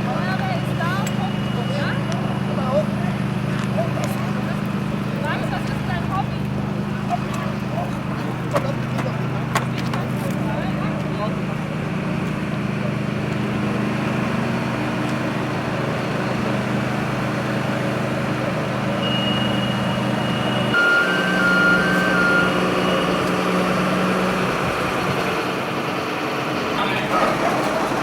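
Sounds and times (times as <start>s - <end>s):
diesel truck engine running: 0.0s - 28.0s
high steady tone: 18.3s - 25.0s
alternating beeps: 19.0s - 24.2s.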